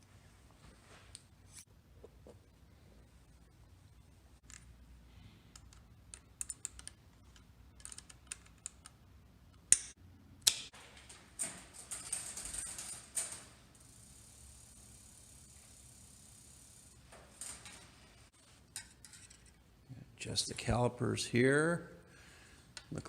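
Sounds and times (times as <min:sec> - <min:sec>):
bicycle parts clicking: 0:05.4 - 0:18.0, 0:18.7 - 0:19.6.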